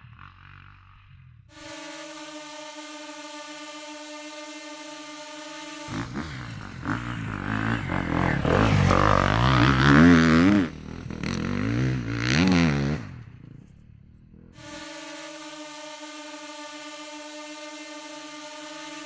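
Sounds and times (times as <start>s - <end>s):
motorcycle engine revving: 0.0s - 1.9s, 5.8s - 15.2s
steady droning tone: 0.0s - 19.0s.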